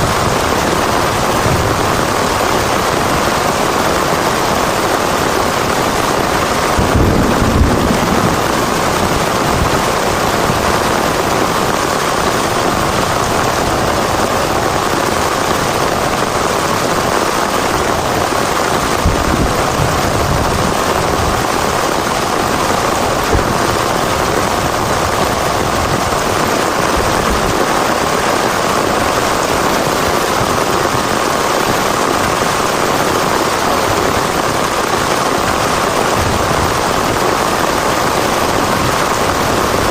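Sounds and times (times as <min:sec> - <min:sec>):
heavy rain falling: 0:00.0 - 0:39.9
low rumble: 0:06.7 - 0:11.3.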